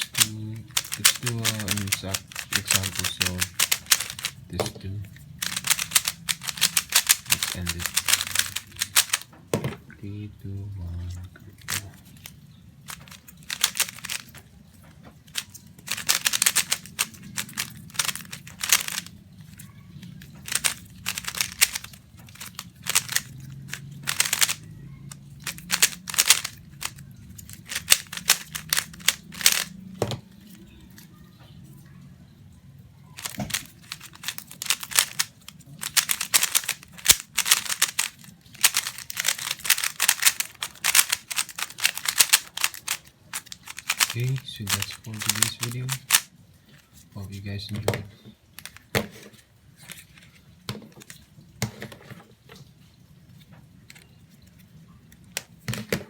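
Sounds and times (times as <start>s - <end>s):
puzzle cube plastic clicking: 0.0s - 9.3s, 11.6s - 14.5s, 15.2s - 30.6s, 33.2s - 46.3s, 47.7s - 49.0s, 53.9s - 56.0s.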